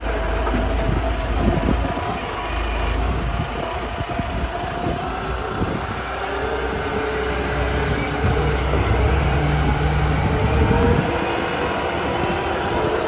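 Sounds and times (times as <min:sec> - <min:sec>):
concrete mixer engine running: 0:00.0 - 0:13.0.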